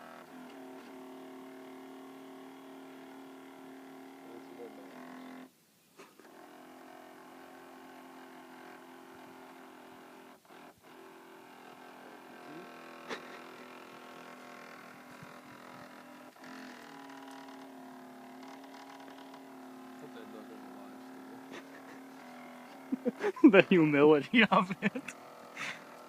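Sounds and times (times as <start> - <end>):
toy boat electric motor whining: 0.0 - 26.0.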